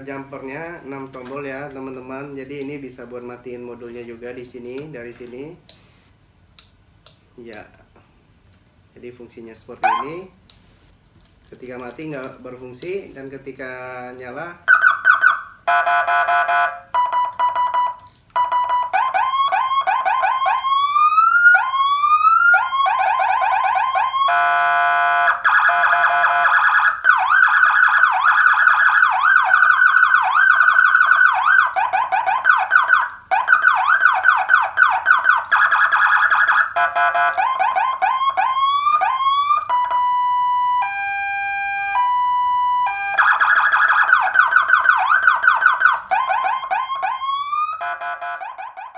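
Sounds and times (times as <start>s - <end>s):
rapid siren yelp: 9.8s - 10.1s, 14.7s - 48.9s
siren rising wails: 9.8s - 10.1s, 14.7s - 48.9s
two-tone hi-lo siren: 9.8s - 10.1s, 14.7s - 48.9s.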